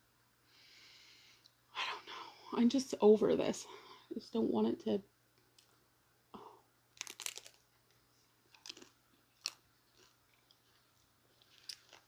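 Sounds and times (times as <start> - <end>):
chewing crunchy food: 7.0 - 12.0.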